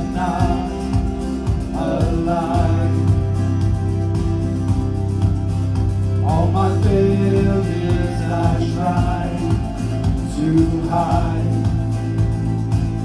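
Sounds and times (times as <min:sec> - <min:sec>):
person singing: 0:00.0 - 0:03.9, 0:06.2 - 0:12.3
worship band playing: 0:00.0 - 0:13.0.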